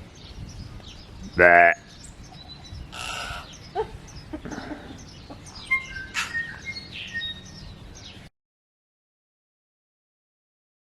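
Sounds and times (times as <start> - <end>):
birds chirping and whistling: 0.0 - 8.3.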